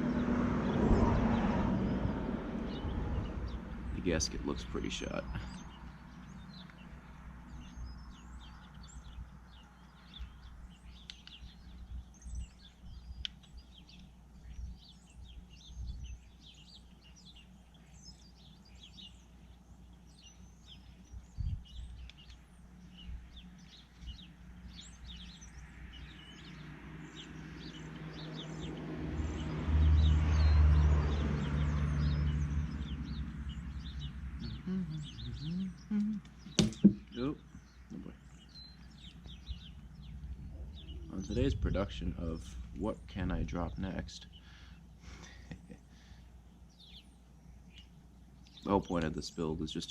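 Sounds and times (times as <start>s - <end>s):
vehicle engine passing by: 0.0s - 9.6s, 24.7s - 35.9s, 39.0s - 42.9s
small birds chirping: 0.0s - 49.9s.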